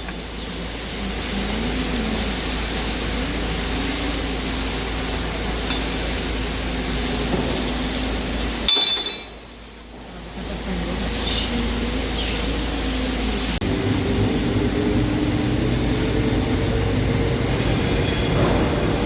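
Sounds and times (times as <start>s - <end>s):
machine hum: 0.0s - 19.0s
sharp metallic clink: 8.7s - 9.4s.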